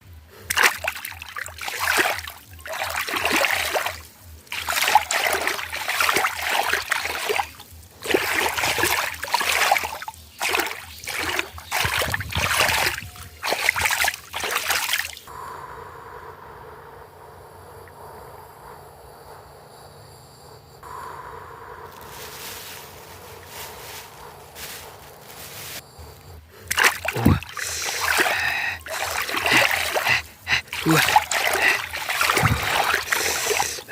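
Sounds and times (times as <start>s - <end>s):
water splashing and pouring: 0.5s - 15.3s, 26.7s - 33.9s.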